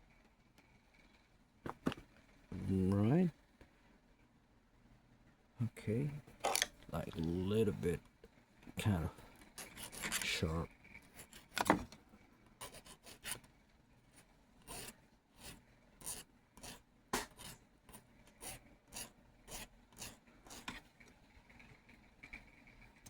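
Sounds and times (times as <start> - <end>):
hand file rasping on metal: 14.6 - 17.6, 18.4 - 20.8.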